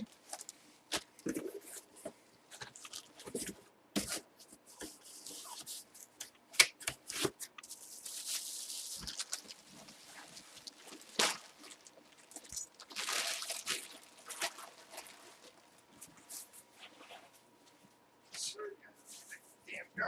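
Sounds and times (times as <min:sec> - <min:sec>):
packaging crinkling and rustling: 0:00.0 - 0:01.9, 0:02.5 - 0:04.3, 0:04.9 - 0:17.3.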